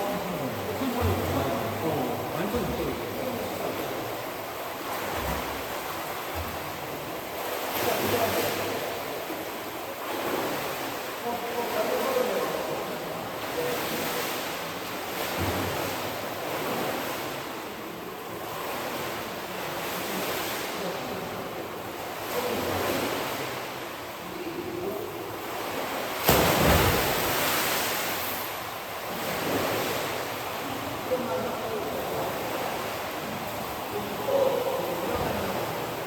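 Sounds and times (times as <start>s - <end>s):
water splashing in a pool: 0.0s - 36.0s.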